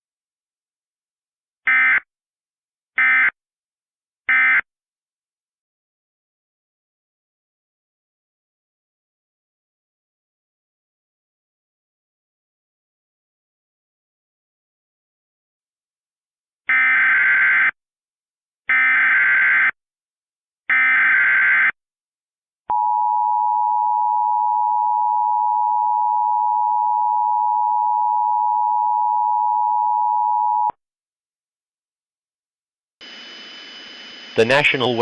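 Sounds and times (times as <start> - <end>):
digital data bursts: 33.0 - 35.0.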